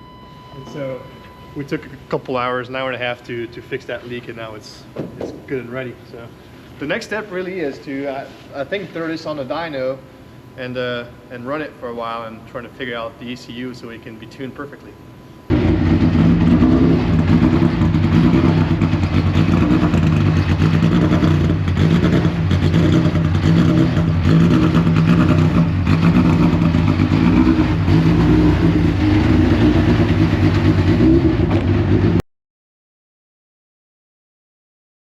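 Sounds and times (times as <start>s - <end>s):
race car engine running: 15.5s - 32.2s.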